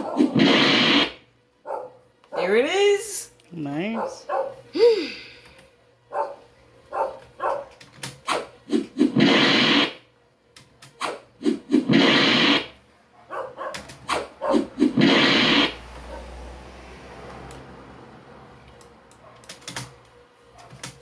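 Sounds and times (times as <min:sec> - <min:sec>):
loud hissing burst: 0:00.3 - 0:01.3, 0:11.8 - 0:12.8, 0:15.0 - 0:15.8.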